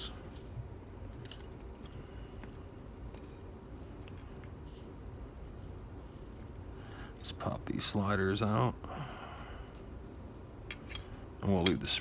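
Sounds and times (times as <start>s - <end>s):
small metal parts clinking: 0.3s - 2.0s, 2.9s - 4.5s, 9.7s - 12.0s.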